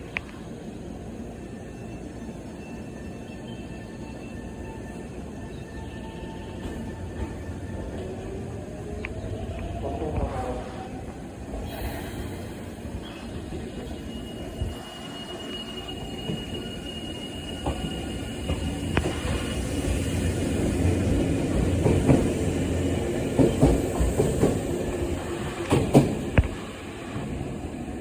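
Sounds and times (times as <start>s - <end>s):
electric train passing: 0.9s - 28.0s
faint high squeal: 1.5s - 8.4s, 11.6s - 20.0s.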